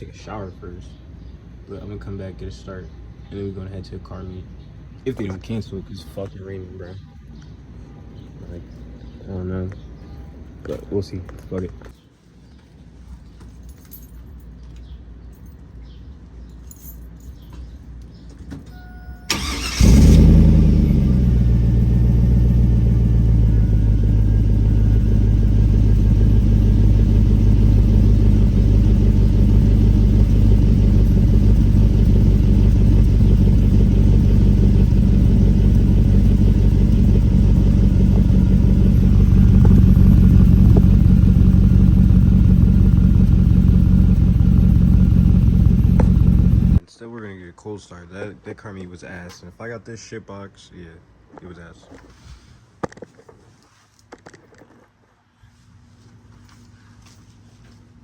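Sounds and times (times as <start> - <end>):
engine starting and idling: 18.7 - 46.8
engine cranking: 19.3 - 22.3, 23.1 - 46.8.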